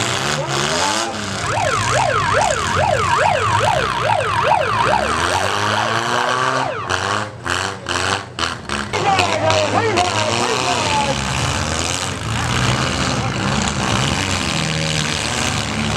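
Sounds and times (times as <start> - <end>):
engines running: 0.0 - 15.9
emergency siren wailing: 1.1 - 7.4.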